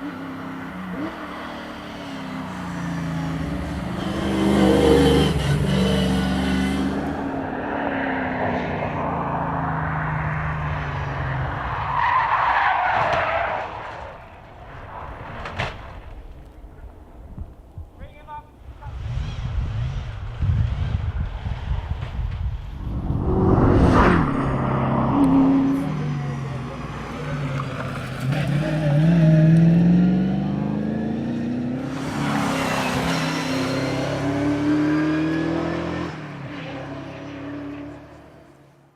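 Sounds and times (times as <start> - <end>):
car engine accelerating: 19.0 - 38.3
loud rushing skidding noise: 19.2 - 27.1.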